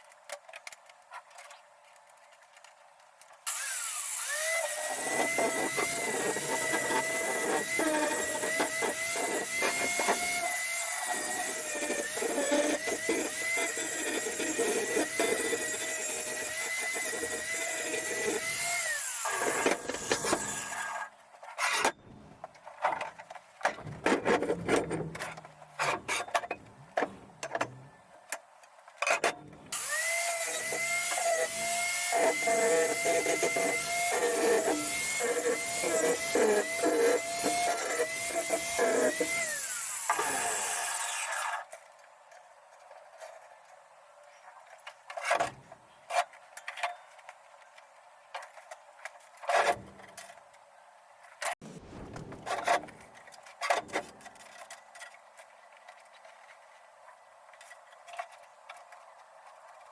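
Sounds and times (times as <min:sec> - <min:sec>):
power tool motor whining: 0:03.5 - 0:21.0, 0:29.7 - 0:41.6.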